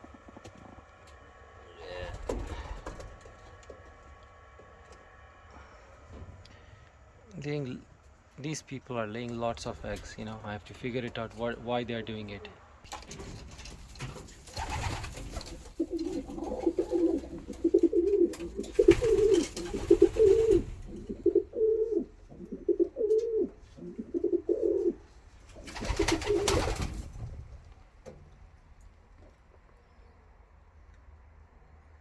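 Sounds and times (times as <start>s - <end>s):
pigeons cooing: 14.5s - 27.0s.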